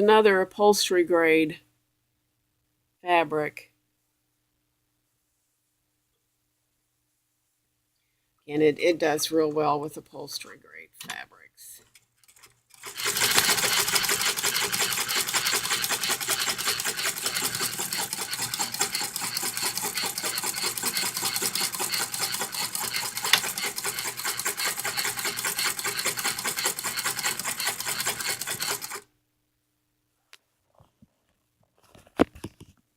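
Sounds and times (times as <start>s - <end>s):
sewing machine running fast: 12.7s - 29.0s.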